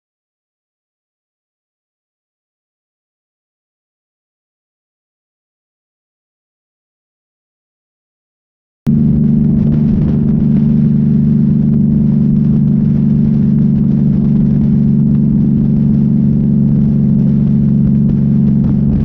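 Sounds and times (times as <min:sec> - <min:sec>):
truck diesel engine droning: 0:08.9 - 0:19.0.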